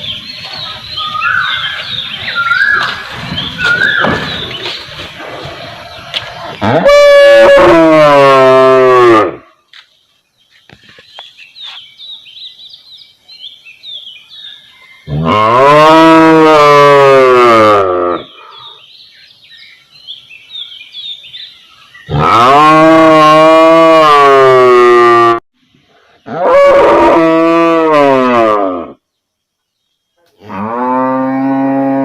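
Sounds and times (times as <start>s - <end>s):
cow mooing: 30.4s - 32.0s.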